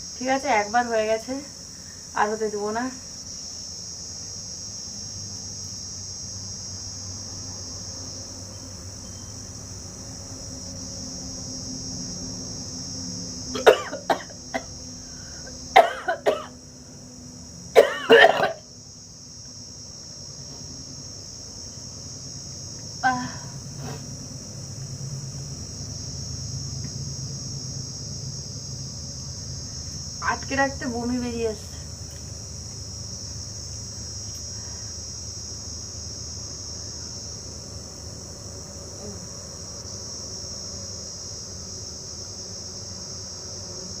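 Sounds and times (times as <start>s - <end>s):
crickets chirping: 0.0s - 44.0s
woman coughing: 13.6s - 14.7s, 15.8s - 16.5s, 17.8s - 18.6s.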